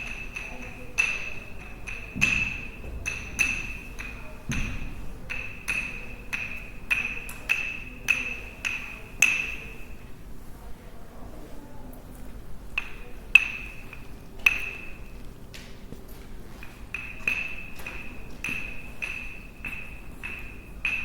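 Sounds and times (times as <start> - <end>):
sticks struck ringing: 0.0 - 9.8, 12.8 - 15.1, 16.9 - 21.0.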